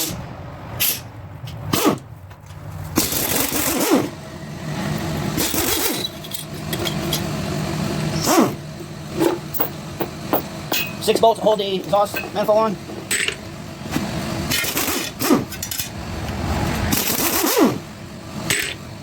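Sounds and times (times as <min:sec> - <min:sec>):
impact wrench bursts: 0:03.0 - 0:04.2, 0:05.0 - 0:07.3, 0:08.0 - 0:11.4, 0:12.0 - 0:16.0, 0:16.8 - 0:18.9
low motor hum: 0:03.0 - 0:19.0.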